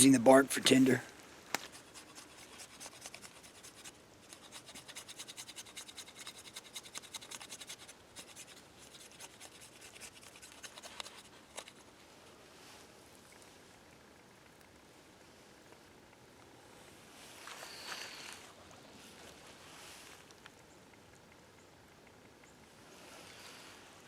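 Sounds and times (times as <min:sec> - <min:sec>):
bark scraping from dry stalks: 0:01.6 - 0:11.9.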